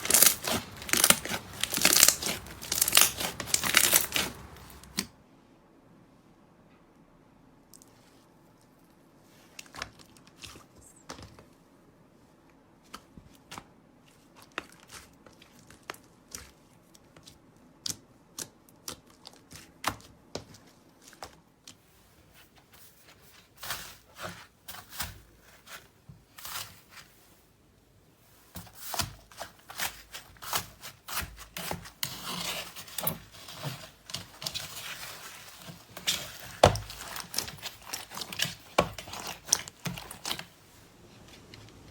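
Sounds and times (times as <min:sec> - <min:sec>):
slime clicking and popping: 0:00.0 - 0:05.0.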